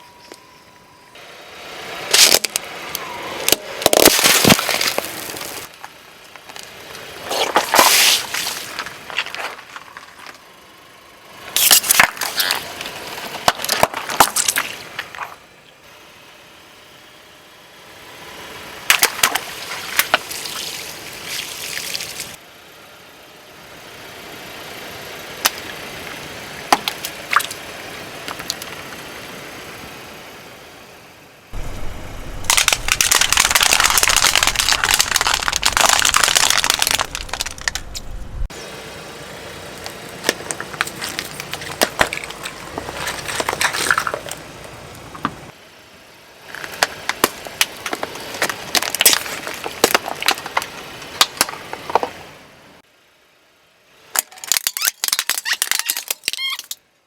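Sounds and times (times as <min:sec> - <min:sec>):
objects crunching under tyres: 0:02.0 - 0:15.5, 0:18.4 - 0:22.4, 0:25.4 - 0:29.1, 0:31.6 - 0:38.6, 0:39.5 - 0:45.6, 0:46.4 - 0:52.4, 0:54.0 - 0:56.8.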